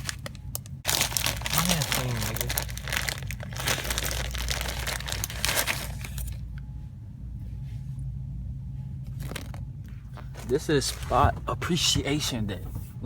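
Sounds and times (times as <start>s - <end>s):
plastic packaging crinkling: 0.0s - 6.5s
faint low hum: 0.0s - 13.0s.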